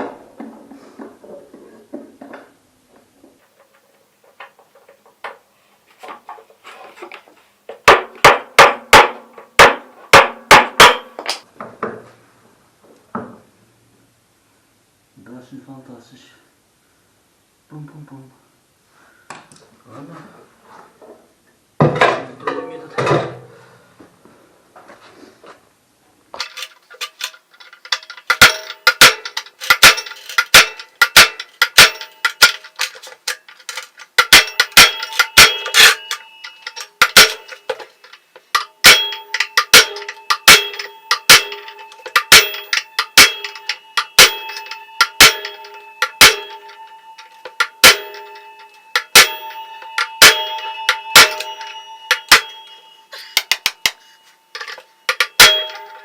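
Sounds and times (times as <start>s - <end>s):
hammer blows on metal: 7.9s - 11.3s, 34.2s - 56.0s.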